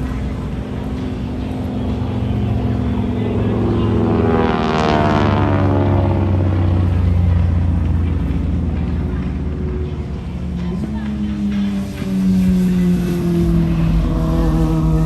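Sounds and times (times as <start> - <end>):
propeller plane droning flyby: 0.0 - 15.0.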